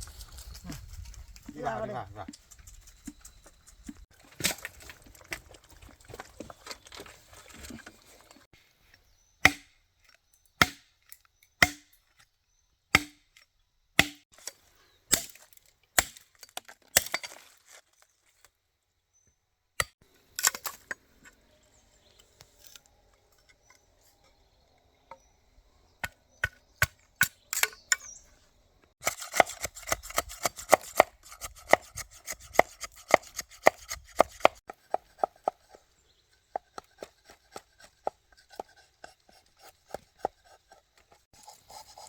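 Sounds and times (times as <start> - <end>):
sharp chopping strikes: 9.4 - 9.8, 10.6 - 10.9, 11.6 - 11.9, 13.0 - 13.3, 14.0 - 14.2.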